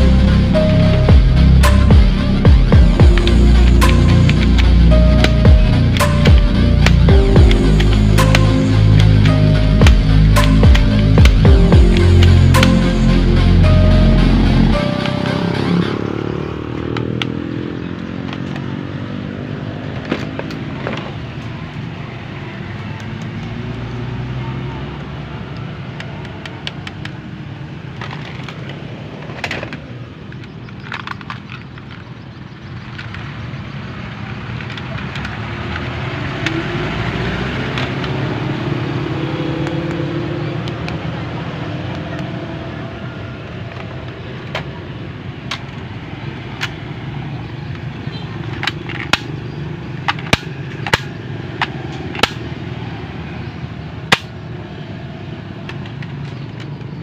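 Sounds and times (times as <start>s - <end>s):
sharp cracks: 48.5s - 52.7s, 54.1s - 54.4s.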